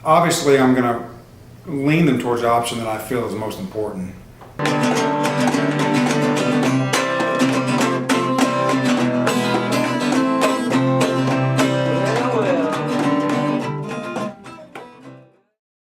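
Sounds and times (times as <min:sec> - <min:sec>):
plucked guitar music with beat: 0:04.6 - 0:15.4.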